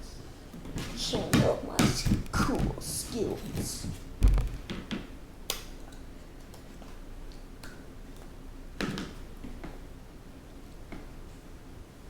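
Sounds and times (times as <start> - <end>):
rustling: 2.0 - 4.9
low thump: 4.2 - 4.7.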